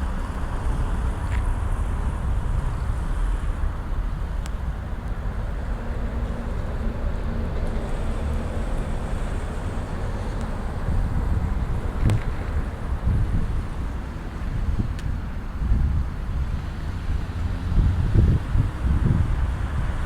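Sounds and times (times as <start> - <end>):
traffic: 0.0 - 20.0
wind on microphone: 0.0 - 20.0.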